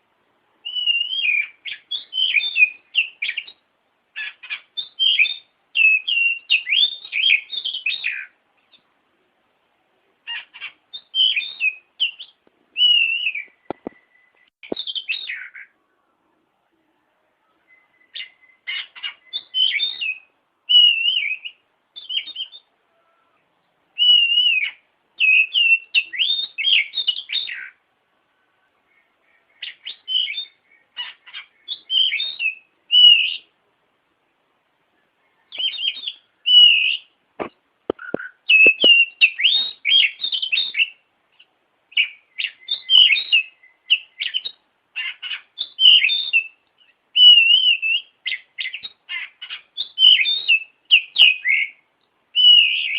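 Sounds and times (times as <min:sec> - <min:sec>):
bird singing warbling phrases: 0:00.5 - 0:08.9, 0:10.1 - 0:33.6, 0:34.9 - 0:52.9
sharp clicks: 0:37.4 - 0:39.0.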